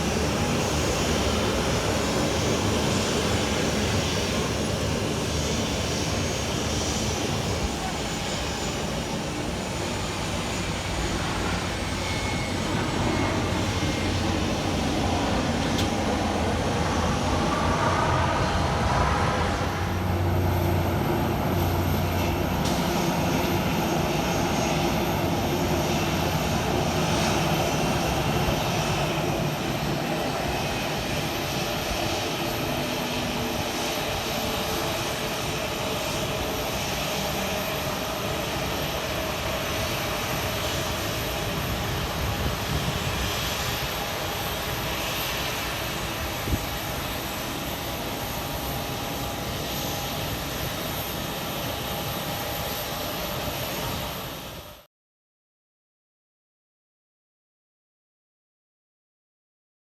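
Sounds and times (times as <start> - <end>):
rising engine whine: 0.0 - 33.1
airplane engines running: 0.0 - 54.9.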